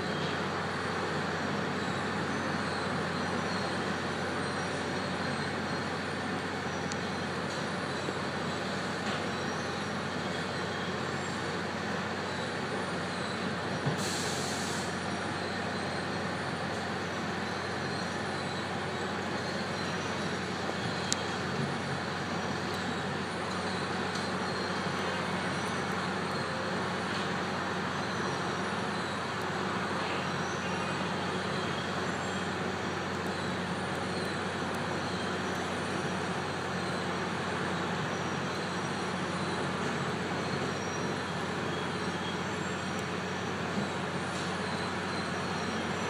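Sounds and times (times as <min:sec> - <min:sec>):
heavy machinery engine rumble: 0:00.0 - 0:46.0
air hiss: 0:14.0 - 0:14.9.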